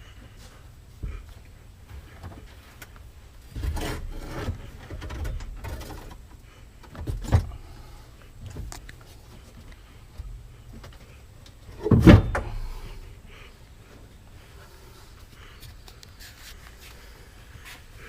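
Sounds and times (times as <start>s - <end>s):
parts scraping and rubbing: 3.4s - 6.4s.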